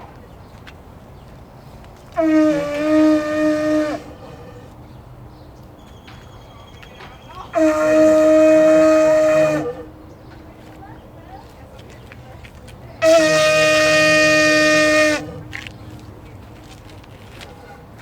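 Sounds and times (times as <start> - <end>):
conch shell trumpet blasts: 2.2 - 4.5, 13.0 - 15.4.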